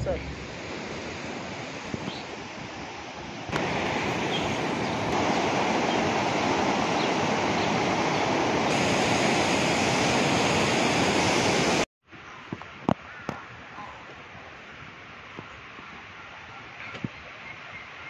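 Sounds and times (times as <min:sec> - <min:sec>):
fast-flowing water rushing: 0:00.0 - 0:11.9.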